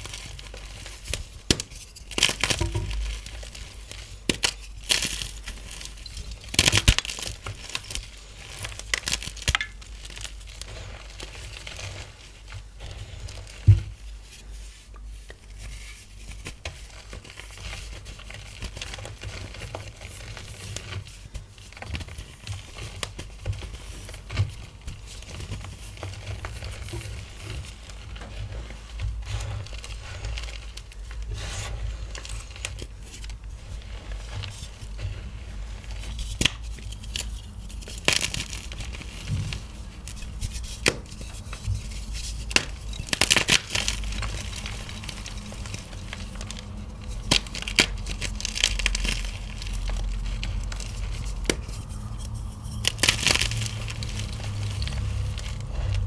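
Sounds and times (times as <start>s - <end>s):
chalk crunching and crumbling: 0.0s - 56.0s
sharp snaps and crackles: 1.1s - 10.7s, 35.9s - 56.0s.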